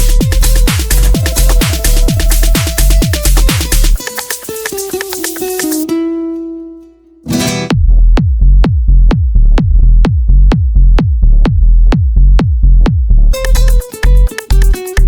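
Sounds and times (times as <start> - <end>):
four-on-the-floor kick drum: 0.0 - 4.1, 7.7 - 15.0
synth melody: 0.0 - 5.9.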